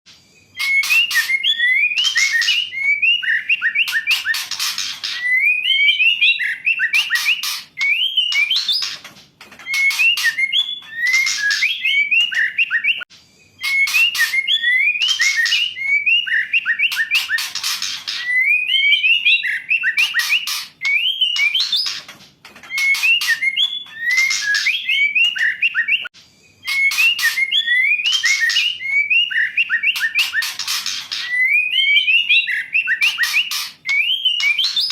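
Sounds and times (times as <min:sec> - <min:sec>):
bird singing whistled notes: 0:00.2 - 0:09.0, 0:09.6 - 0:22.0, 0:22.6 - 0:34.9
bird harsh rasping notes: 0:00.5 - 0:13.0, 0:26.6 - 0:34.9.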